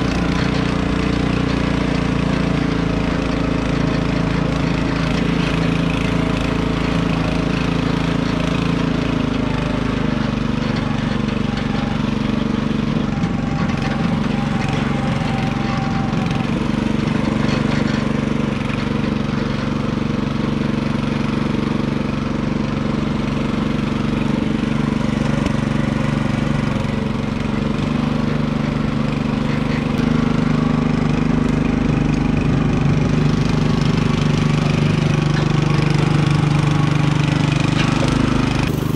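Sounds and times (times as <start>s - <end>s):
small engine running: 0.0s - 38.9s.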